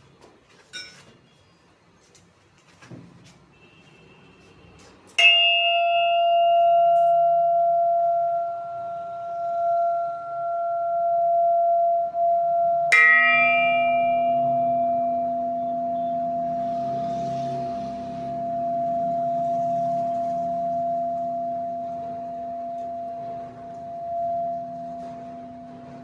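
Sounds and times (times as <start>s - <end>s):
lower ringing tone: 5.2s - 26.0s
metal singing bowl ringing: 5.2s - 26.0s.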